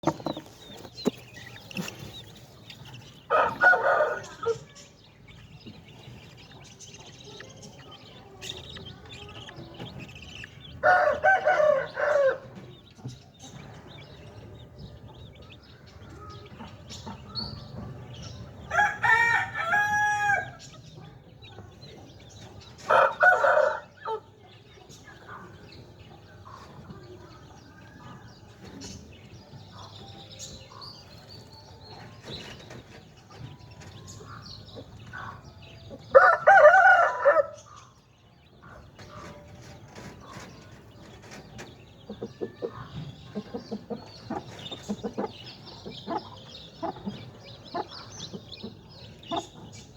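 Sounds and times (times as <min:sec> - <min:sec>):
rooster crowing: 0:03.3 - 0:04.6, 0:10.8 - 0:12.4, 0:18.7 - 0:20.6, 0:22.9 - 0:24.2, 0:36.1 - 0:37.6.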